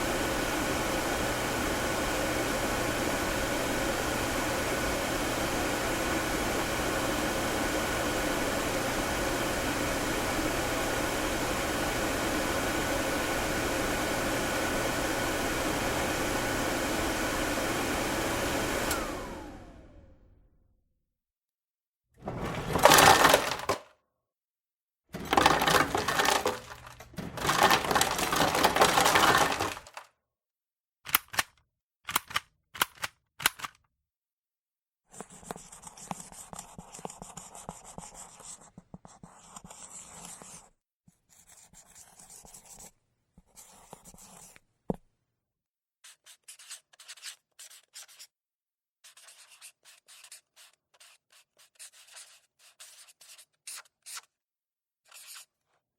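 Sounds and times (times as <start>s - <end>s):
paper tearing or rustling: 25.2s - 30.1s
light short scratches: 55.1s - 55.6s.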